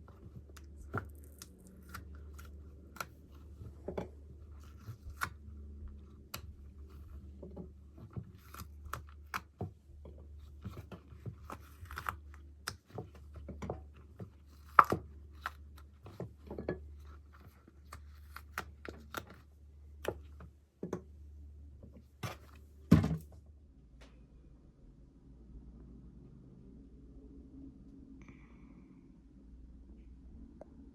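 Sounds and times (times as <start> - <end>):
steady low hum: 0.0 - 30.9.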